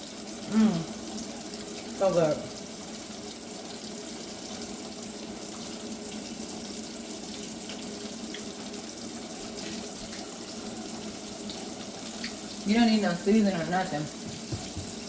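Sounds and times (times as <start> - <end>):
food sizzling in hot oil: 0.0 - 15.0
oil popping: 14.2 - 15.0.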